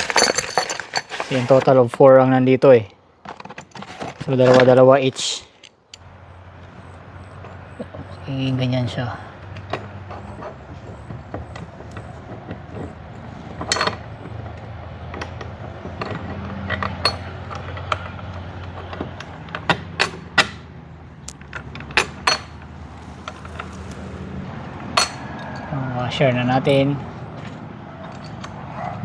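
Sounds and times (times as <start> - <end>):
metal parts clicking and knocking: 0.0 - 1.4, 9.5 - 20.6, 21.2 - 24.0.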